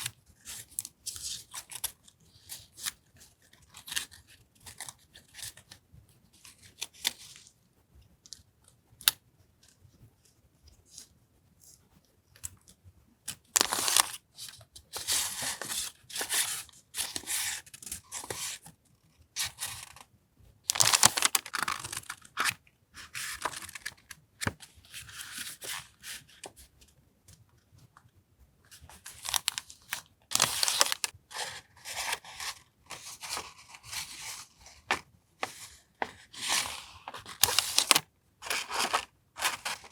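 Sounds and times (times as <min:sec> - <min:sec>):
paper rustling and tearing: 0:20.7 - 0:24.6, 0:28.9 - 0:39.9.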